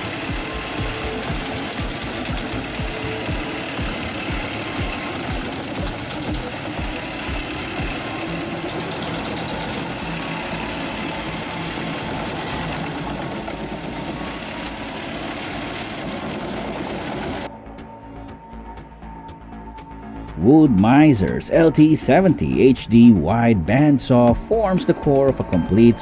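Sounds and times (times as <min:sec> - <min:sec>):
heavy machine engine running: 0:00.0 - 0:17.5.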